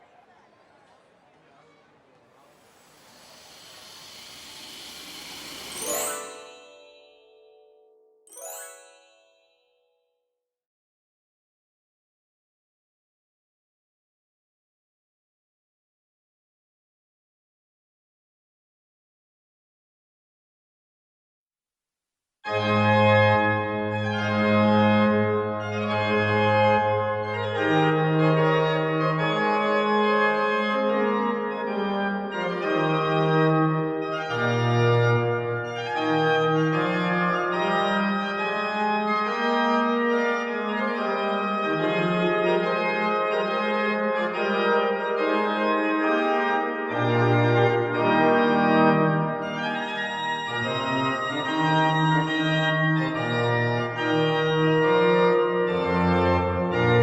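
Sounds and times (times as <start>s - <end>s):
organ playing sustained chords: 2.3s - 8.0s, 23.2s - 57.0s.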